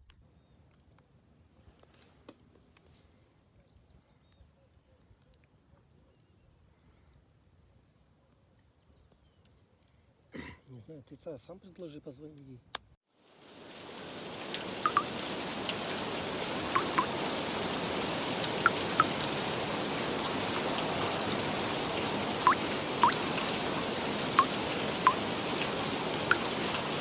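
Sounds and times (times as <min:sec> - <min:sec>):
steady rain: 0:13.2 - 0:27.0
single drops plinking: 0:14.9 - 0:15.1, 0:16.8 - 0:17.1, 0:22.5 - 0:23.2.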